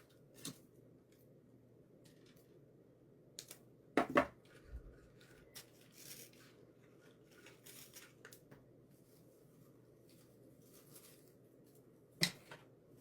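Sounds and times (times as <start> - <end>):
artificial flowers rustling: 8.9 - 11.8.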